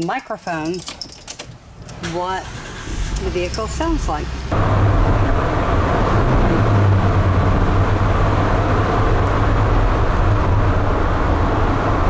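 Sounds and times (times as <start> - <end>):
road noise rushing: 1.8 - 12.0
engine drone: 2.4 - 12.0.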